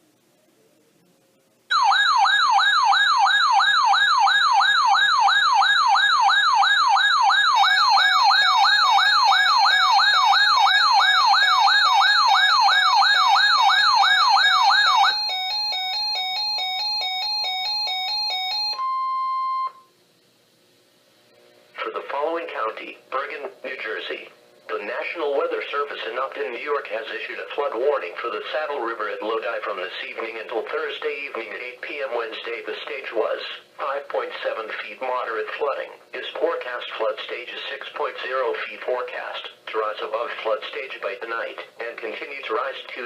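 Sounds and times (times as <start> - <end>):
stepped beeping tones: 7.6 - 19.9
steady high beep: 18.5 - 19.9.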